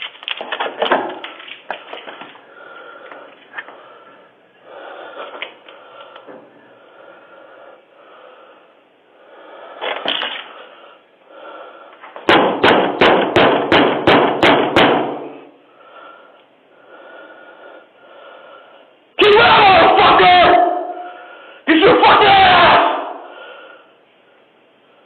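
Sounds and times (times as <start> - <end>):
loud bangs on a door: 12.2 - 15.4.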